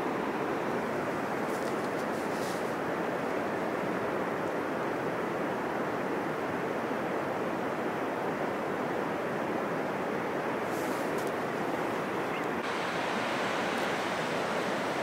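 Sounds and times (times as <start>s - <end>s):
rough surf breaking: 12.6s - 15.0s.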